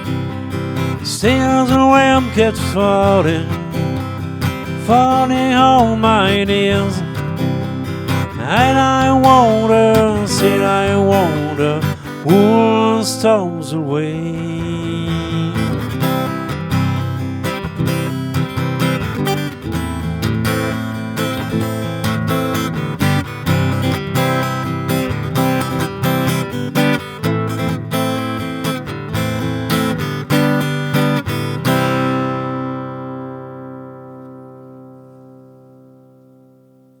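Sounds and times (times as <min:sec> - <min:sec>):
acoustic guitar strumming: 0:00.0 - 0:37.0.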